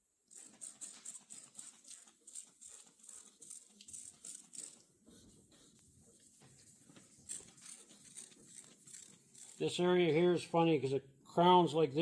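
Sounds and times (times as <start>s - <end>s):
wet sanding strokes on paint: 0.4s - 9.9s.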